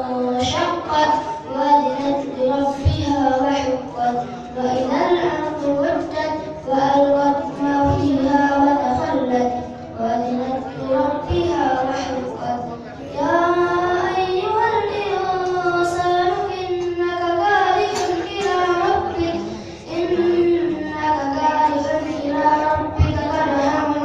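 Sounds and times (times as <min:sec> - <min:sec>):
child reciting melodically: 0:00.0 - 0:24.0.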